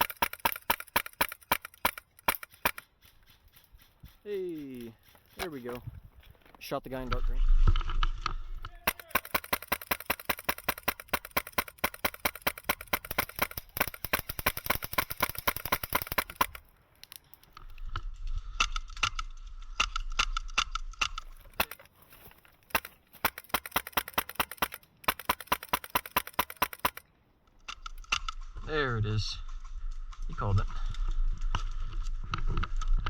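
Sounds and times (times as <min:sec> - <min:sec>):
airsoft gun firing rapid shots: 0:00.0 - 0:03.6, 0:08.8 - 0:16.6, 0:21.4 - 0:21.9, 0:22.6 - 0:27.0.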